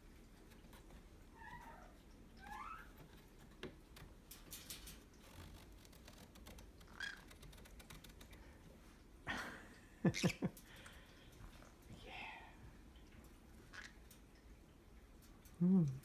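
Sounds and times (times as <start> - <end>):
conures chirping softly: 6.8 - 8.5, 10.1 - 10.4, 13.6 - 14.2.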